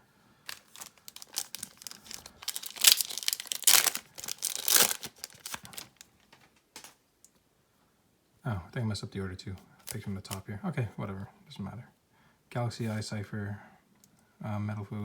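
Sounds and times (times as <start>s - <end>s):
foil wrapper tearing and crinkling: 0.5s - 6.2s.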